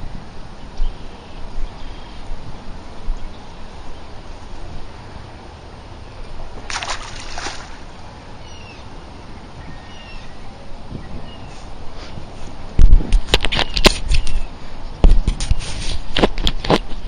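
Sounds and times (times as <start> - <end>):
water splashing: 6.4 - 8.3
bird chirps: 8.4 - 8.9.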